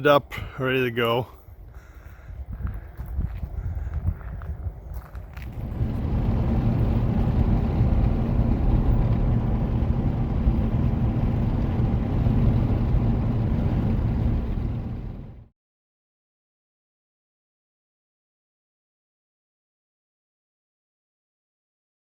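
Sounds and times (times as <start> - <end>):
vehicle engine rumble: 0.0 - 15.5.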